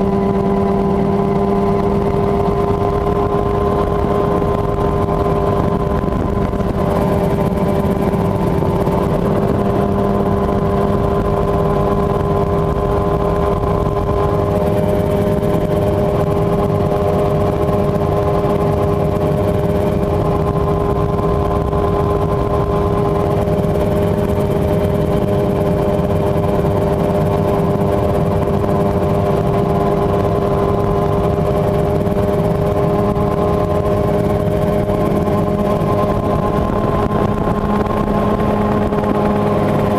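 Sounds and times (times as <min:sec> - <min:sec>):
helicopter engine and rotor drone: 0:00.0 - 0:39.9.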